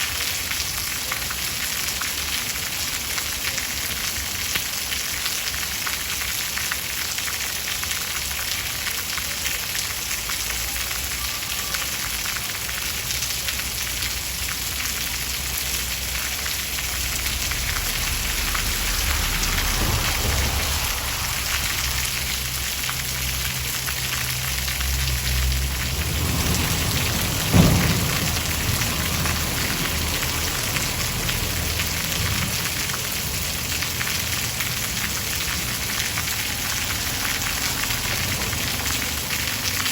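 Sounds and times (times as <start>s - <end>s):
heavy rain hissing: 7.6s - 39.9s
low rolling thunder: 17.2s - 23.5s, 25.2s - 33.5s
sharp thunder clap: 18.2s - 22.8s, 25.8s - 30.7s.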